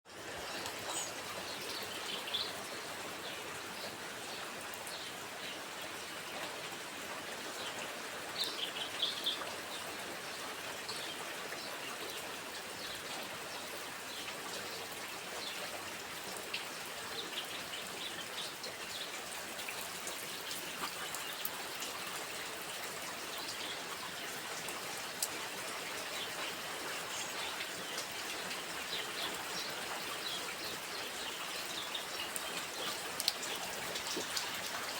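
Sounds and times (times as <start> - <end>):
steady rain hiss: 0.1 - 34.9
small birds chirping: 0.3 - 6.2, 17.0 - 34.9.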